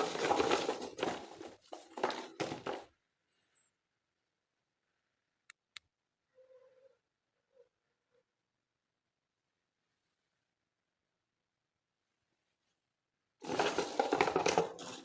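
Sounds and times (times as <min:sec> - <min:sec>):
packaging crinkling and rustling: 0:00.0 - 0:02.9, 0:13.4 - 0:15.0.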